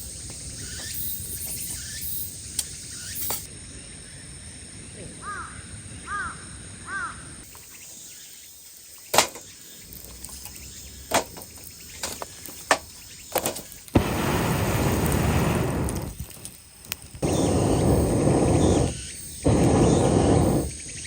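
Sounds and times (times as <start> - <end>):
crow cawing: 5.2 - 7.2
loud steady hiss: 13.9 - 21.0.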